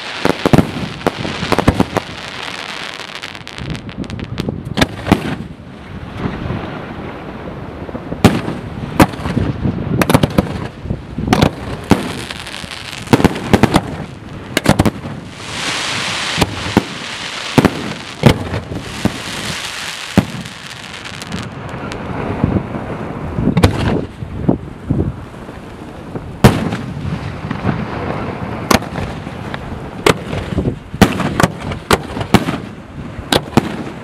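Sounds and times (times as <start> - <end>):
fireworks crackling: 0.0 - 5.5, 8.2 - 22.8
fireworks bangs: 0.0 - 5.6, 8.2 - 22.9, 23.5 - 24.2, 26.4 - 34.0.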